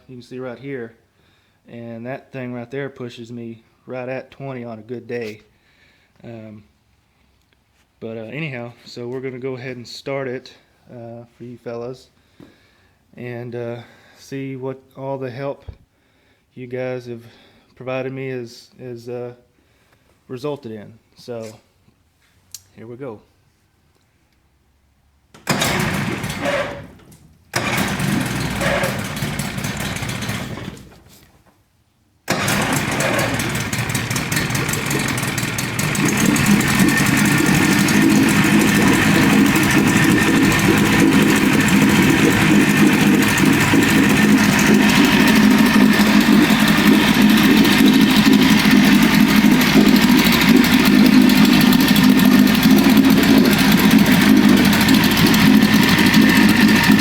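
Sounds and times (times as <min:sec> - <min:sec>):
outboard motor starting and running: 0:25.4 - 0:31.2, 0:32.3 - 0:57.0.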